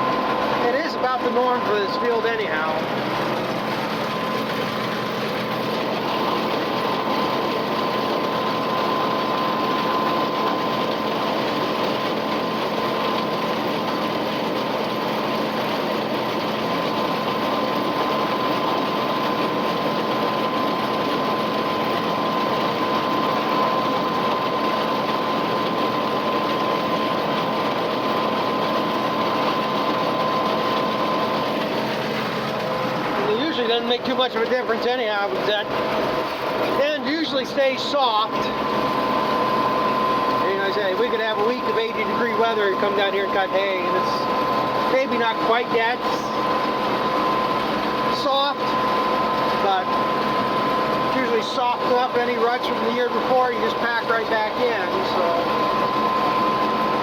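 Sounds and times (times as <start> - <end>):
baler high whine: 0.0 - 10.5, 27.3 - 57.0.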